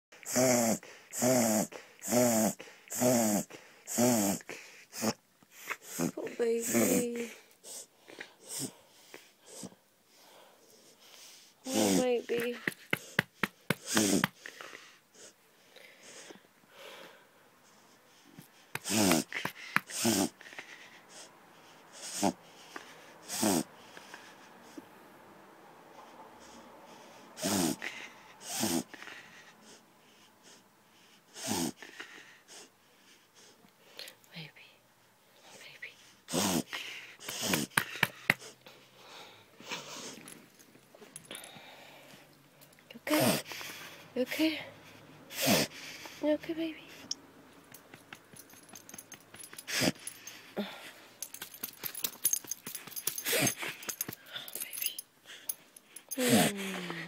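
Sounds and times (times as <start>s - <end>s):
dog breathing: 0.2s - 25.0s, 25.9s - 34.2s, 35.3s - 57.0s
dog reverse sneezing: 18.8s - 20.4s, 23.2s - 23.7s, 27.4s - 27.8s, 28.4s - 28.9s, 43.1s - 44.0s, 45.3s - 46.0s.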